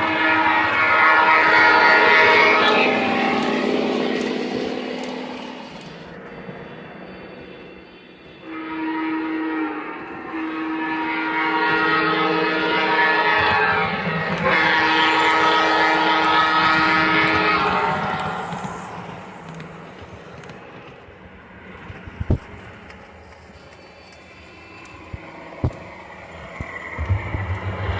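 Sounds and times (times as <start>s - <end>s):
model train horn blasts: 0.0s - 6.1s, 8.3s - 19.5s
train running noise: 0.0s - 27.9s.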